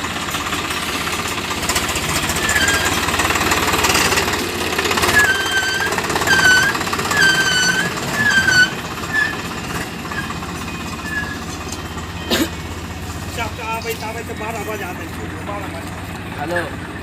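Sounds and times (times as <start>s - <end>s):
tractor diesel engine chugging: 0.0s - 17.0s
short high squeals: 2.3s - 3.2s, 5.1s - 12.7s.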